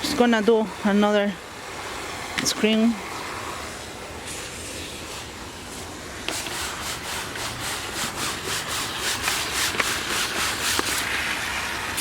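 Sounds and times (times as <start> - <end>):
brushes scrubbing wet screen: 4.3 - 12.0.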